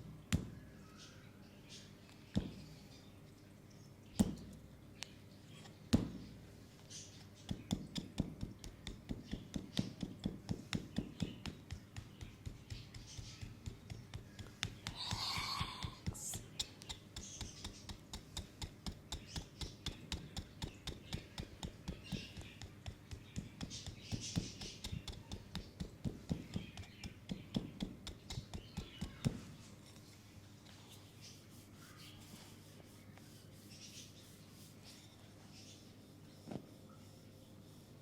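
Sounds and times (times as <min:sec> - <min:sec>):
hands tapping on oiled skin: 0:07.4 - 0:29.5
breathy hiss: 0:14.9 - 0:16.3.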